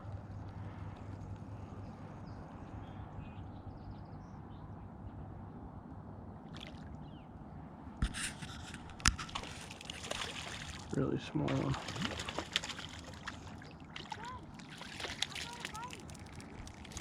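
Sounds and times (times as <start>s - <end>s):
steady low rumble: 0.0s - 8.0s
fish splashing in water: 8.2s - 17.0s.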